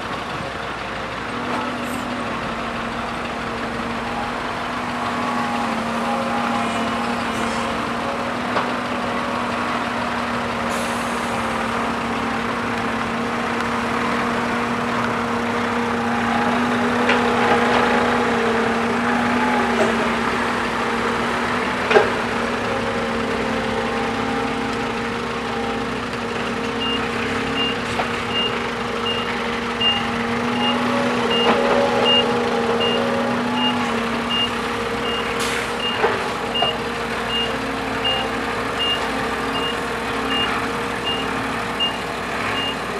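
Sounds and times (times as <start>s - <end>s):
excavator diesel engine running: 0.0s - 42.9s
reversing alarm beeping: 26.8s - 42.9s.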